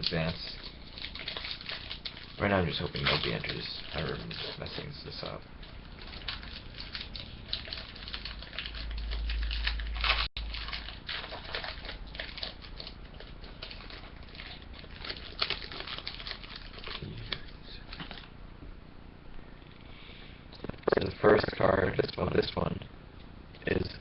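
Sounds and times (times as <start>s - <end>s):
foil wrapper crinkling and tearing: 0.0s - 18.3s.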